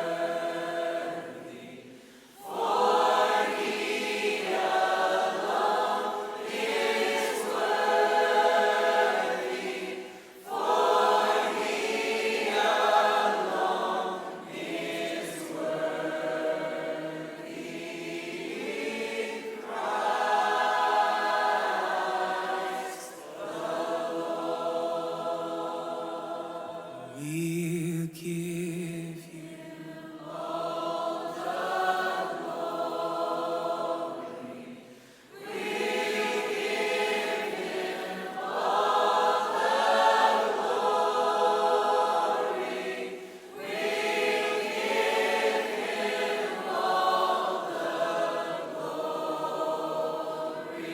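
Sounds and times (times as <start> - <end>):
choir singing a slow hymn: 0.0 - 50.9.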